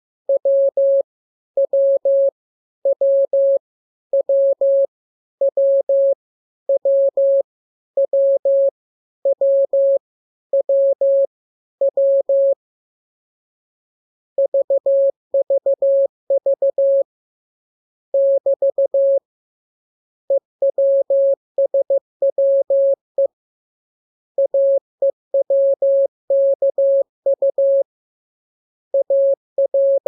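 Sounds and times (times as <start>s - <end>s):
morse code beeps: 29.0s - 30.0s.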